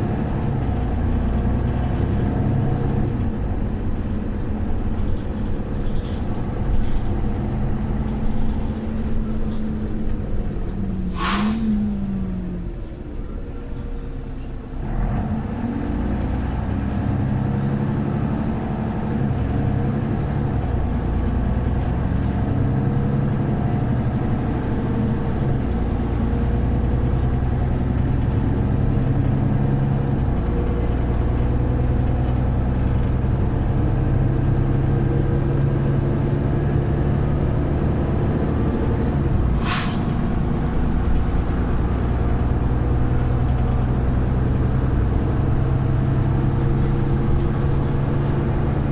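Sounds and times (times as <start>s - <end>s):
bus engine running: 0.0s - 48.9s
short sharp hiss of air: 11.1s - 11.9s, 39.5s - 40.4s.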